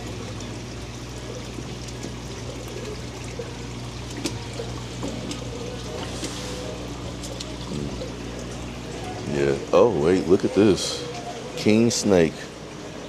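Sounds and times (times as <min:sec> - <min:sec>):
low hum of pumps: 0:00.0 - 0:13.0
water trickling and splashing: 0:00.0 - 0:13.0.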